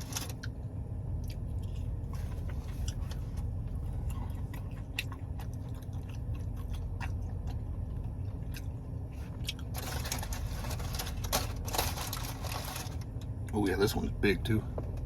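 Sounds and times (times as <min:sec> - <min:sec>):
low rumble: 0:00.0 - 0:15.0
close chewing: 0:01.2 - 0:10.9
loud rustling: 0:09.8 - 0:13.0.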